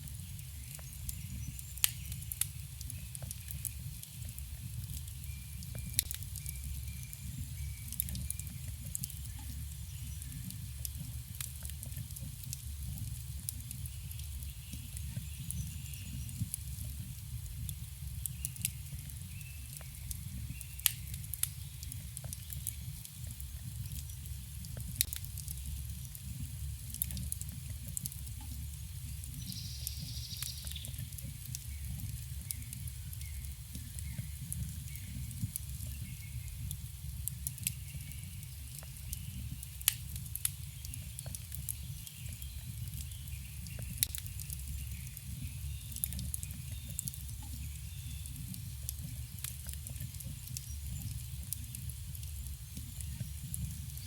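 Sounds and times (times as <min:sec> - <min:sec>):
burning wood crackling and popping: 0:00.0 - 0:54.0
campfire flame rumble: 0:00.0 - 0:54.0
faint birdsong: 0:18.2 - 0:22.9, 0:29.0 - 0:36.8, 0:40.6 - 0:48.5.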